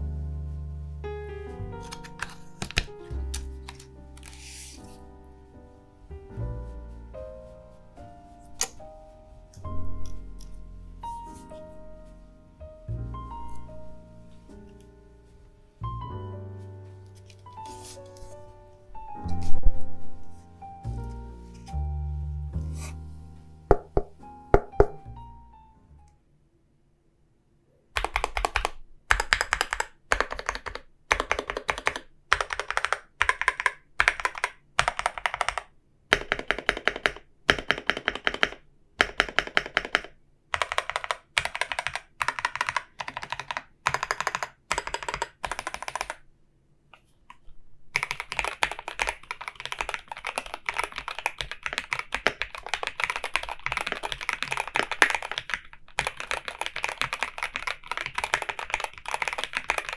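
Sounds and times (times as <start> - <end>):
mechanical keyboard typing: 1.7 - 4.5, 23.7 - 25.0, 28.0 - 46.2, 48.0 - 59.9.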